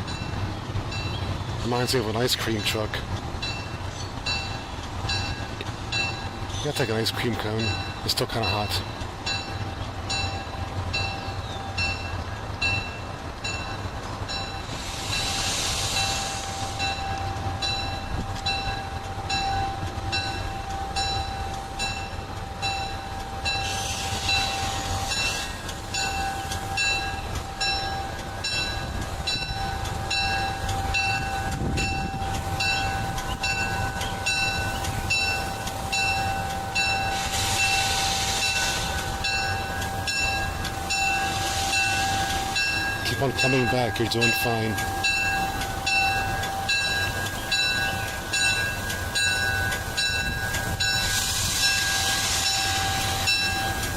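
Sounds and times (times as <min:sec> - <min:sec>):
locomotive running low: 0:00.0 - 0:53.9
train bell ringing: 0:00.0 - 0:53.9
short air hisses: 0:14.8 - 0:16.8.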